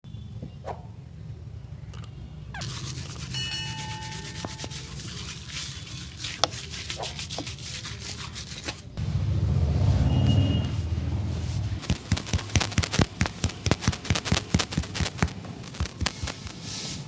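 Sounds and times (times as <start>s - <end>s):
hands rubbing hair and skin: 2.6s - 8.8s, 11.4s - 17.0s.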